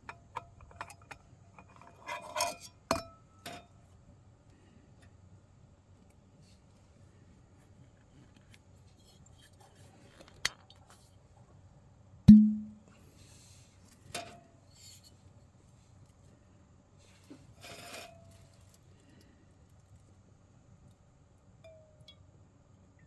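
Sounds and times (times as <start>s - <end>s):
heavy knock with low ring: 12.3s - 12.8s
light ringing clink: 21.6s - 22.2s.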